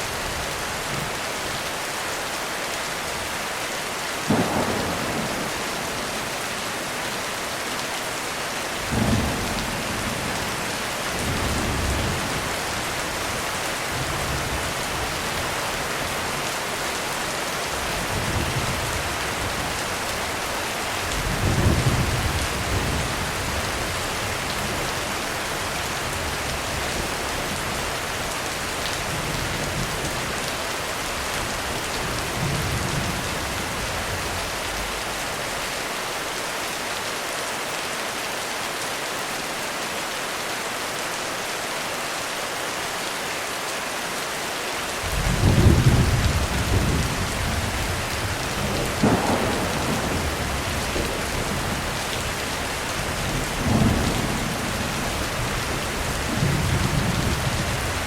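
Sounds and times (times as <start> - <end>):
heavy rain on a roof: 0.0 - 58.0
distant thunder rumbling: 4.3 - 7.3, 45.1 - 57.8.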